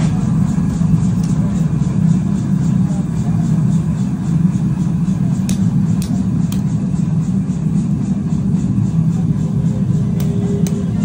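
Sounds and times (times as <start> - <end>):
machinery droning: 0.0 - 11.0
sharp metallic clicks: 4.3 - 7.4, 8.6 - 11.0.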